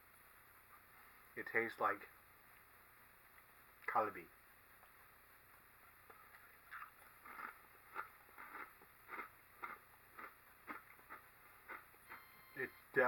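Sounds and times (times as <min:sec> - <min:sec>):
person chewing potato chip: 0:06.1 - 0:11.9.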